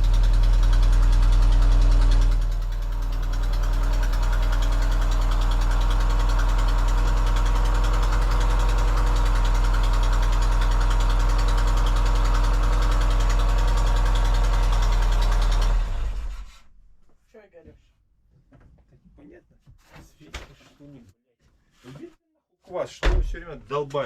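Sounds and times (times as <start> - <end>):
car engine idling: 0.0 - 16.4.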